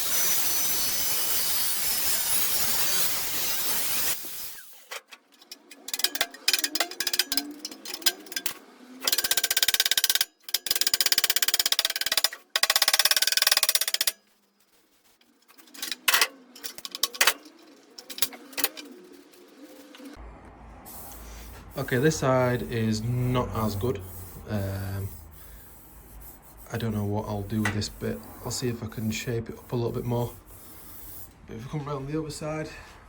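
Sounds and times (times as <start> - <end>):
rasping tool: 0.0 - 14.2.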